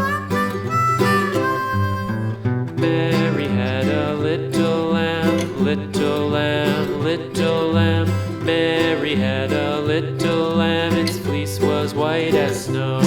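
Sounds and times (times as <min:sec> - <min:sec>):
country band music: 0:00.0 - 0:03.7
harmonica melody: 0:00.0 - 0:05.6
acoustic guitar: 0:00.0 - 0:13.0.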